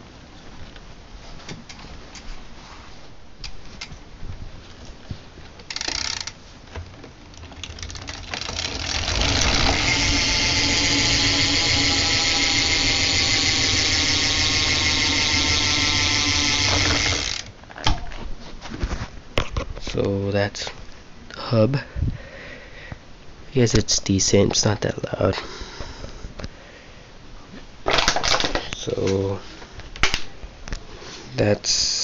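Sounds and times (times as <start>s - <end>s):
bicycle hub ratcheting clicks: 5.6s - 6.4s, 7.3s - 17.5s.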